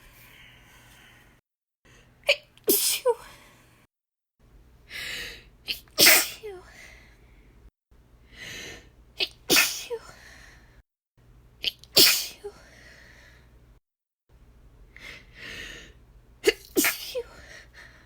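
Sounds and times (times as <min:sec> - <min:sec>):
woman sneezing: 0:02.3 - 0:03.2, 0:05.7 - 0:06.6, 0:09.2 - 0:10.1, 0:11.6 - 0:12.5, 0:16.4 - 0:17.4.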